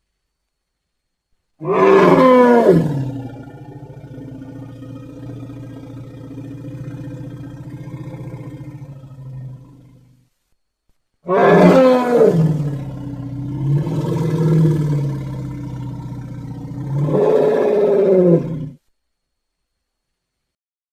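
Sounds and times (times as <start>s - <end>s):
elephant bellowing: 1.6s - 10.1s, 11.3s - 18.8s.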